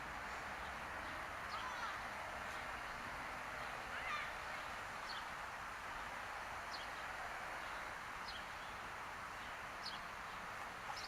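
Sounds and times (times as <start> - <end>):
steady outdoor hiss: 0.0 - 11.0
bird chirping: 4.5 - 5.3, 6.7 - 8.8, 9.4 - 11.0.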